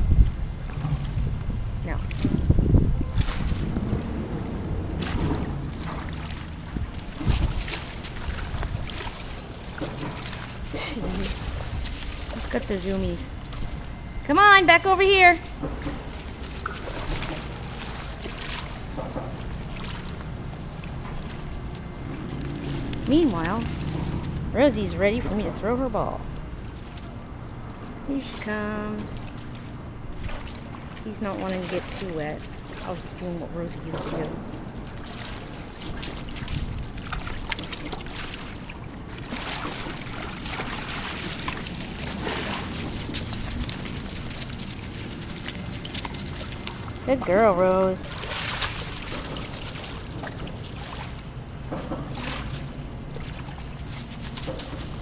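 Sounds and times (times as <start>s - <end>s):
low rumble: 0.0s - 9.6s
river water running and splashing: 2.0s - 13.7s, 15.7s - 55.0s.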